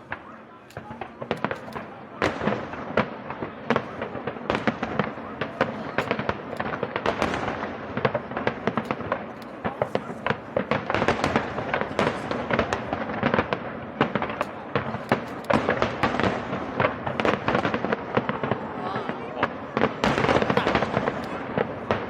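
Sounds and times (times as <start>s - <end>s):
fireworks cracking and banging: 0.0s - 22.0s.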